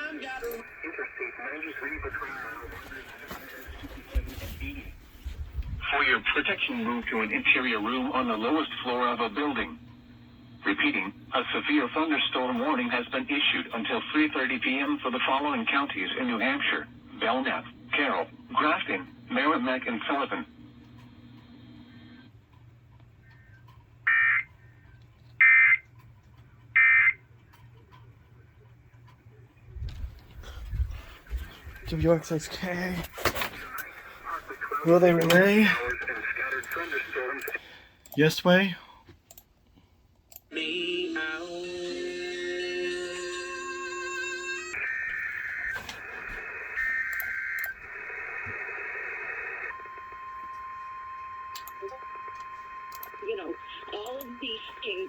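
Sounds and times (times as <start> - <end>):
data bursts over radio: 0.0 - 5.0, 31.3 - 37.7, 44.7 - 50.4
radio music: 0.0 - 22.4, 27.8 - 38.9, 40.4 - 55.0.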